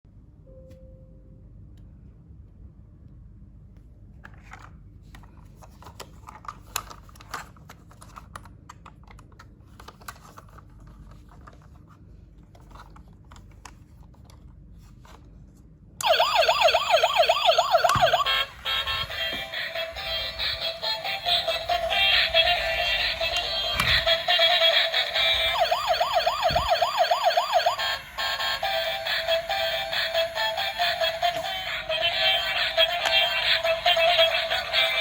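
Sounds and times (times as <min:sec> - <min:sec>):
toy police siren warbling: 0:16.0 - 0:35.0
plastic toy clicks and scratches: 0:29.1 - 0:35.0.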